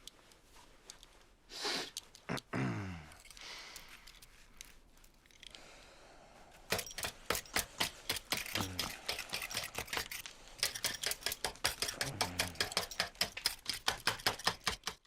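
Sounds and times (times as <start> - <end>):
knife tapping and scraping rock: 6.7 - 15.0
man grunting: 12.0 - 12.6.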